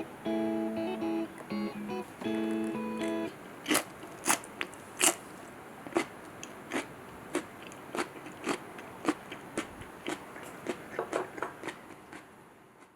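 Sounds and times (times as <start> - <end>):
crunchy food being chewed: 3.7 - 12.9.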